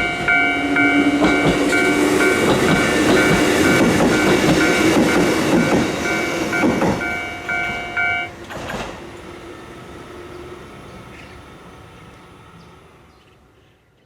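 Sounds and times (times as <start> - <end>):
level crossing warning bell: 0.0 - 8.4
train rumbling past: 0.0 - 14.0.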